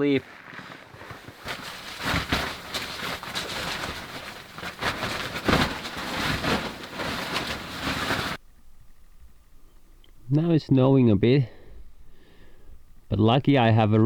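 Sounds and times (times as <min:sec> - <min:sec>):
rustling and crackling handling noise: 0:00.0 - 0:10.3
knocks and scrapes of gear: 0:00.3 - 0:08.4.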